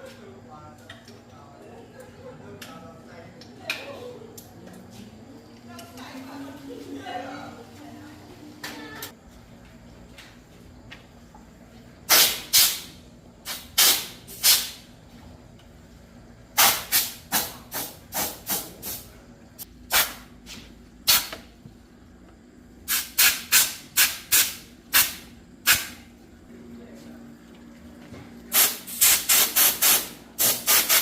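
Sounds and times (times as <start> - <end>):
short spray hisses: 12.1 - 14.8, 16.6 - 19.0, 22.9 - 26.0, 28.5 - 31.0.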